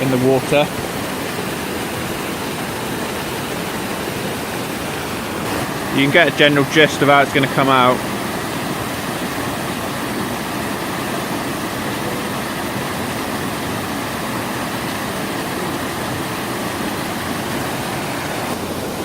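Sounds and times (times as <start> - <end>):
waterfall rushing roar: 0.0 - 19.0.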